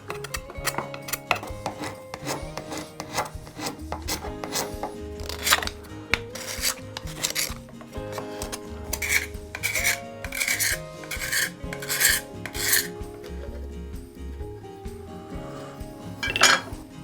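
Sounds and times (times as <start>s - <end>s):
rasping scrubbing on metal: 0.0s - 13.0s
background music: 0.0s - 17.0s.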